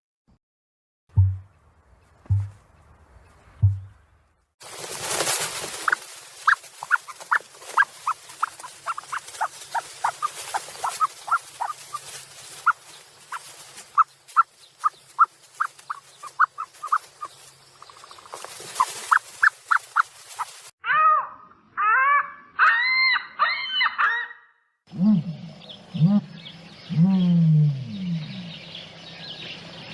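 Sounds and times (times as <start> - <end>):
chicks peeping: 5.8 - 20.5.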